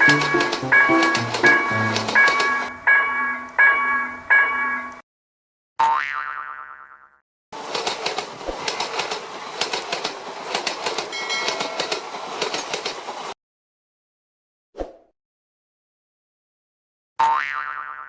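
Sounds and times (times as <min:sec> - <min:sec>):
passing train with wheel clicks: 0:00.0 - 0:02.8, 0:07.6 - 0:13.4.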